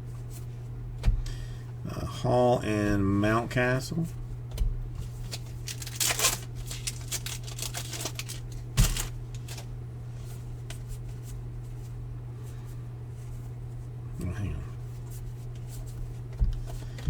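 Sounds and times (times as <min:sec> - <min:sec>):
steady low hum: 0:00.0 - 0:17.0
trading cards flicking and rustling: 0:05.0 - 0:09.7.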